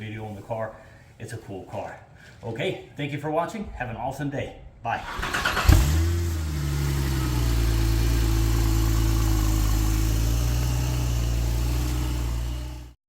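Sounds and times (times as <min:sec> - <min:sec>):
car engine idling: 0:05.1 - 0:13.0.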